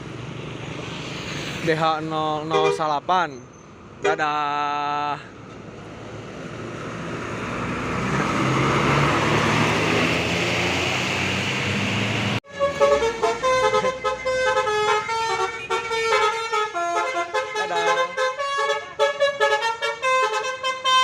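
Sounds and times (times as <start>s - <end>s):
bus passing with road noise: 0.0s - 21.0s
multi-tone bus horn melody: 2.4s - 2.9s, 12.4s - 21.0s.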